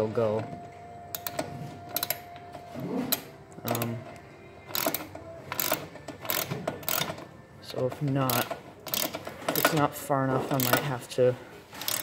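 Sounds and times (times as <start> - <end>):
socket wrench clicking on metal: 1.1 - 2.4, 3.2 - 7.3, 8.2 - 9.9, 10.6 - 10.9, 11.8 - 12.0.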